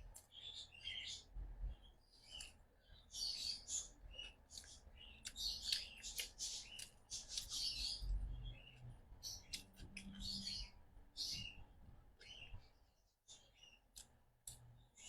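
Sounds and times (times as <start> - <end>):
lip and tongue clicks: 4.5 - 7.6
wet chewing mouth sounds: 4.5 - 7.6.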